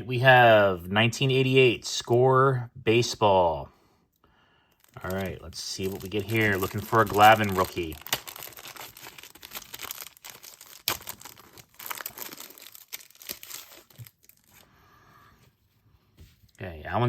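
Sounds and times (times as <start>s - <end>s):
paper wrapper tearing and crinkling: 4.8s - 14.7s.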